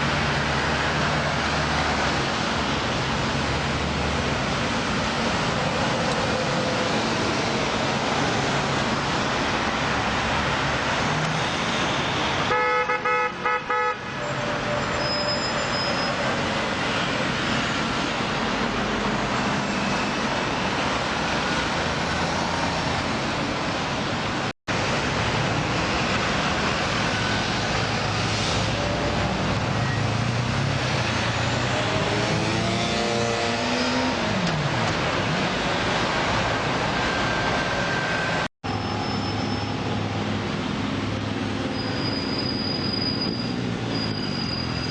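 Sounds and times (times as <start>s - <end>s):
heavy road traffic: 0.0s - 44.9s
vehicle horn: 12.5s - 15.2s.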